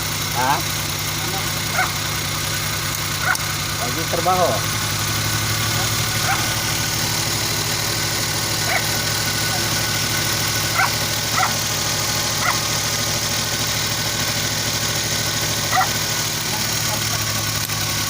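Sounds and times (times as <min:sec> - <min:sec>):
engine idling with misfire: 0:00.0 - 0:18.0
dog barking: 0:01.7 - 0:02.0, 0:03.2 - 0:03.5, 0:05.8 - 0:06.6, 0:08.6 - 0:09.0, 0:10.7 - 0:11.6, 0:12.4 - 0:12.7, 0:15.7 - 0:16.0.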